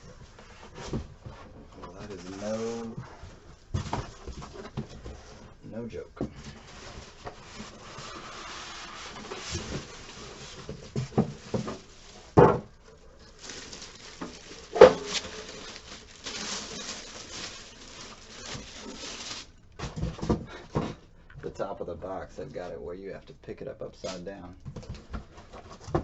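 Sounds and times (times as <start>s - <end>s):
packing rustling: 13.0s - 20.0s.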